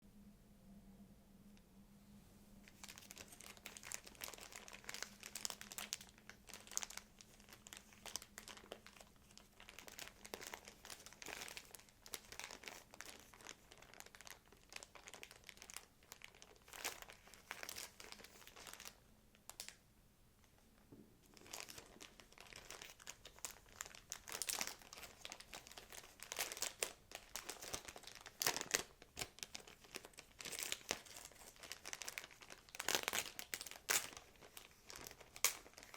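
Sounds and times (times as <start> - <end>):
packaging crinkling: 2.6 - 19.8, 21.3 - 35.9.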